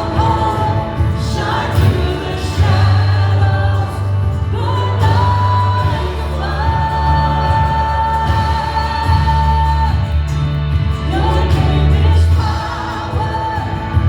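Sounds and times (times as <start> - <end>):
congregation singing: 0.0 - 14.0
steady bass: 0.0 - 14.0.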